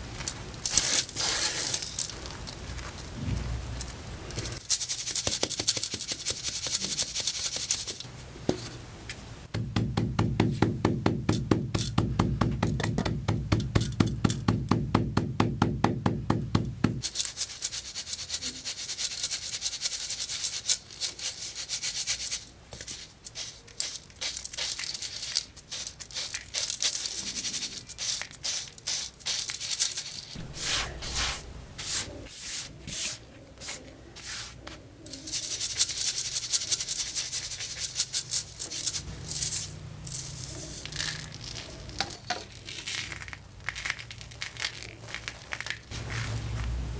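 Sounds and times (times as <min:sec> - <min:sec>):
chalk being ground and scraped: 0:00.7 - 0:02.9, 0:04.6 - 0:08.1, 0:16.9 - 0:42.2.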